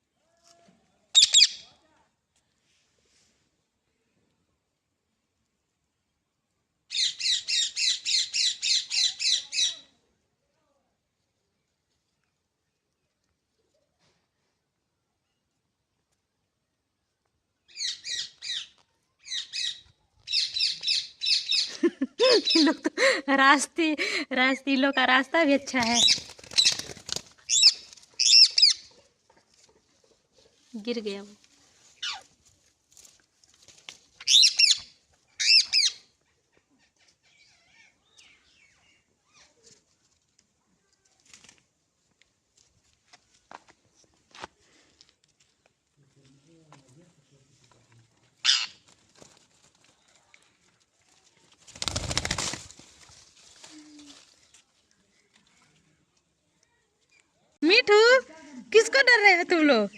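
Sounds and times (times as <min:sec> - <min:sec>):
parakeet chirping: 0:01.2 - 0:01.6, 0:27.5 - 0:28.8
parakeet chirps: 0:01.2 - 0:01.6
parakeet screeching: 0:01.2 - 0:01.6, 0:48.4 - 0:48.8.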